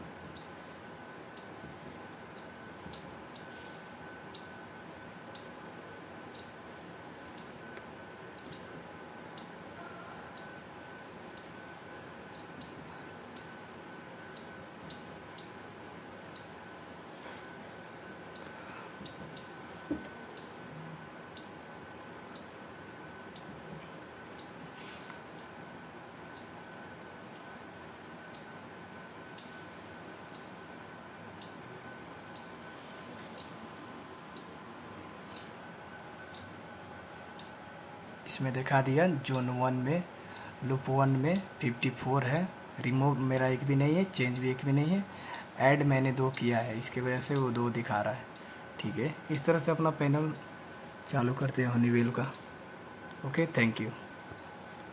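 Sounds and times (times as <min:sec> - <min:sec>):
alarm panel buzzer beeping: 0:21.4 - 0:22.5, 0:31.4 - 0:32.6, 0:37.4 - 0:38.4, 0:47.3 - 0:48.6, 0:49.3 - 0:50.6, 0:53.4 - 0:54.6.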